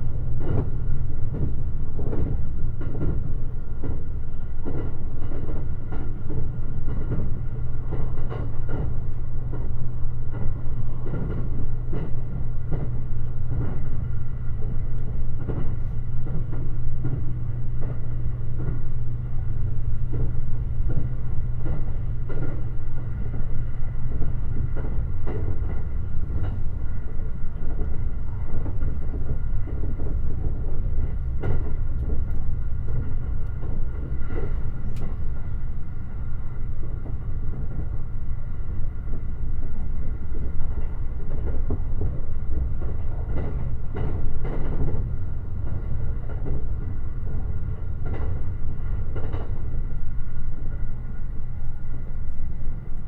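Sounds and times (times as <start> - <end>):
train rumbling: 0.0 - 53.0.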